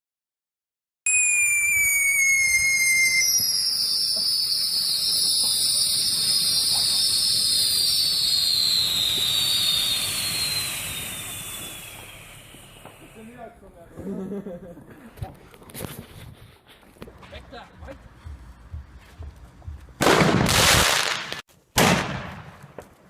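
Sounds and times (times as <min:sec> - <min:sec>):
firework whistles shrieking: 0:01.1 - 0:13.6
rushing hiss: 0:02.8 - 0:13.5.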